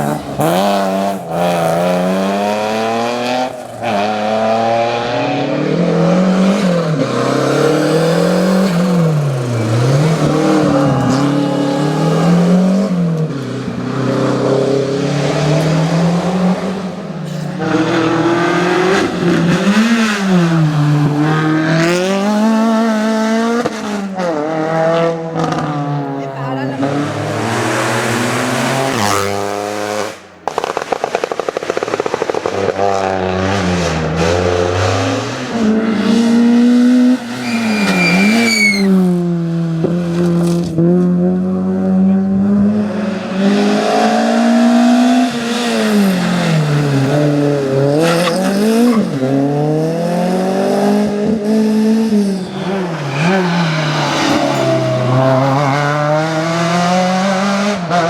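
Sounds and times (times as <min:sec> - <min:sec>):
rally car engine at full throttle: 0:00.0 - 0:58.0
exhaust crackling pops: 0:30.1 - 0:33.2.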